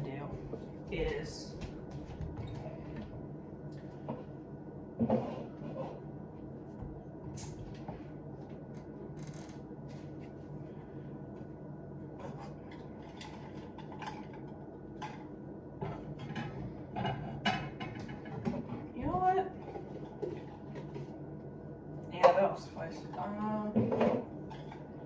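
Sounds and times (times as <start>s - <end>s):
steady low hum: 0.0s - 25.0s
dishes knocking and clinking: 15.9s - 18.7s.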